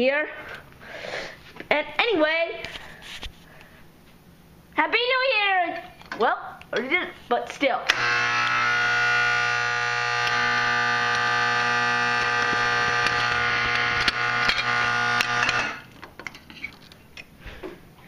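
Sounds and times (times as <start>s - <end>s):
low hum: 7.9s - 15.9s
vibrating horn buzzing: 7.9s - 15.9s.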